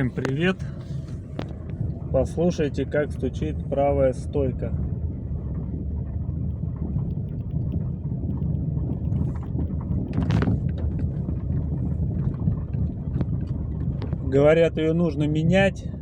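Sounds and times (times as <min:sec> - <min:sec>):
suspension strut knocking: 0:00.0 - 0:02.2, 0:08.4 - 0:14.4
car road rumble: 0:00.0 - 0:16.0.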